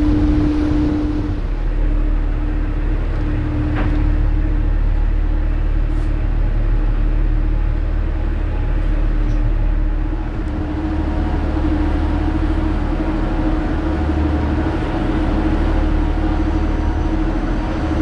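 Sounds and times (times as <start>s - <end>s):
low engine rumble: 0.0s - 18.0s.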